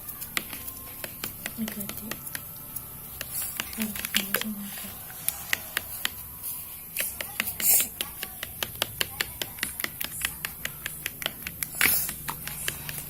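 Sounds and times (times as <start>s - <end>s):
slime squelching: 0.0s - 13.0s.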